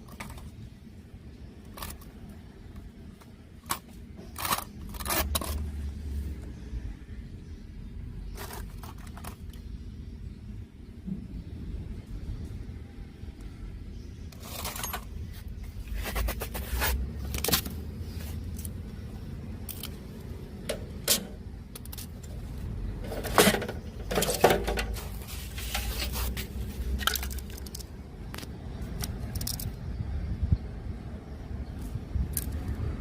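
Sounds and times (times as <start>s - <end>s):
metal parts and tools clicking: 1.6s - 5.8s, 14.3s - 15.4s, 19.6s - 29.8s, 32.3s - 32.8s.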